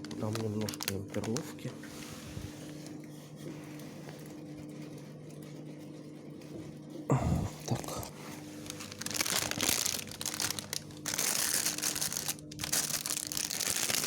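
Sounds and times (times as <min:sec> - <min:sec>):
plastic packet rustling: 0:00.0 - 0:02.5, 0:07.7 - 0:14.0
faint steady hum: 0:06.5 - 0:14.0.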